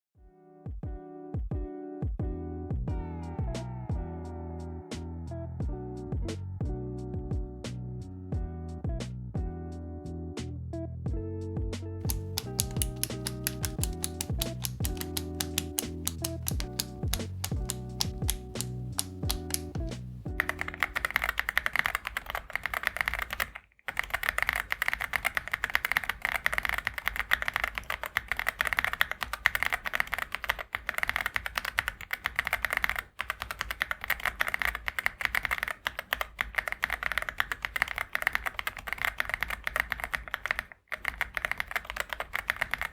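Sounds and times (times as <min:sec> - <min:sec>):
music: 0:00.2 - 0:21.0
mechanical keyboard typing: 0:12.1 - 0:42.9.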